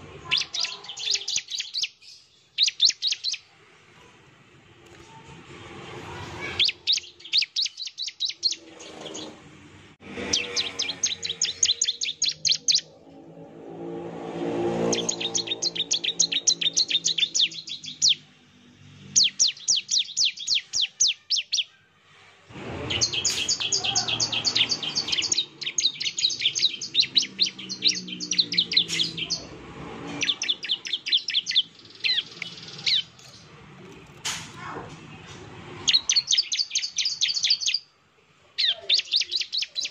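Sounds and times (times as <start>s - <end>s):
bird singing sharp high notes: 0.2s - 3.5s, 6.4s - 9.3s, 10.1s - 21.8s, 22.8s - 33.5s, 35.8s - 37.9s
low hum: 12.6s - 16.8s.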